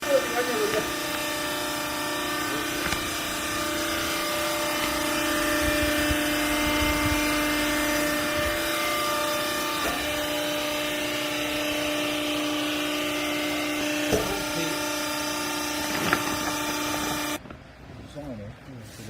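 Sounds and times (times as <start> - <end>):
baler motor and pump humming: 0.0 - 18.3.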